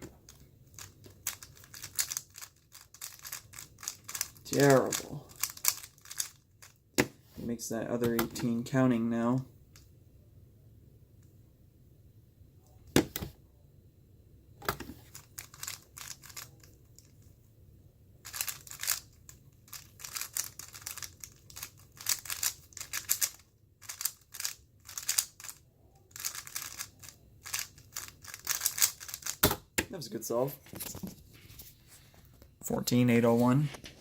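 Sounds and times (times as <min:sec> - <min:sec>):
plastic puzzle cube clicking: 0:19.7 - 0:25.6, 0:26.2 - 0:29.4.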